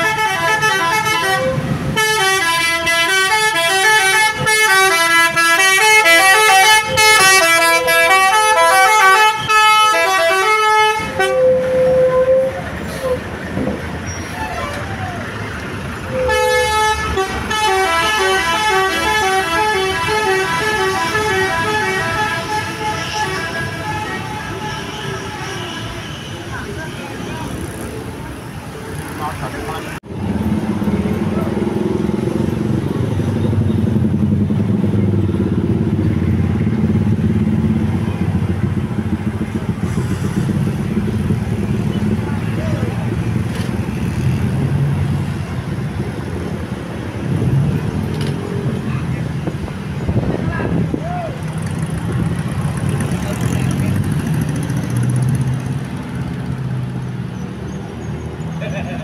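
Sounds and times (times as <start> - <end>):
vehicle engine deep hum: 27.8 - 59.0.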